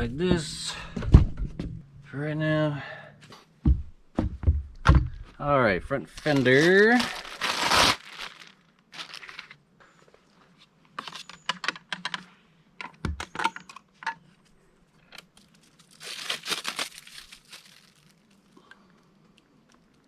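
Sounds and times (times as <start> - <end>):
plastic wrap tearing and crumpling: 6.1 - 9.6, 15.4 - 18.6.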